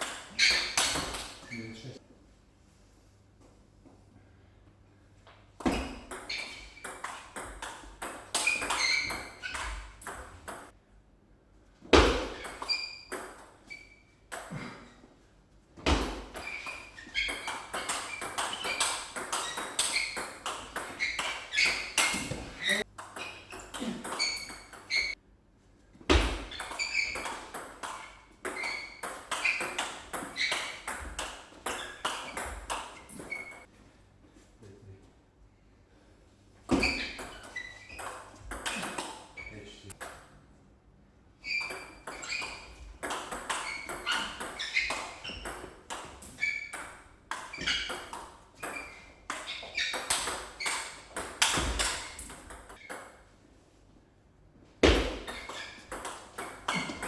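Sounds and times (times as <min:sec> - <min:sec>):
ball bouncing on table: 0:11.9 - 0:13.6, 0:41.6 - 0:53.2, 0:54.8 - 0:57.0.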